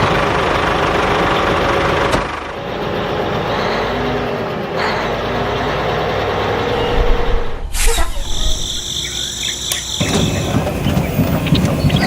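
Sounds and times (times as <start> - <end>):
engine running: 0.0 - 7.7.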